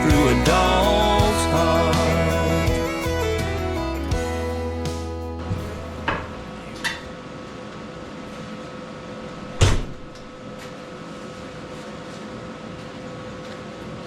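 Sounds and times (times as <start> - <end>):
machine hum: 0.0 - 9.6
loud sharp clunk: 5.4 - 7.1.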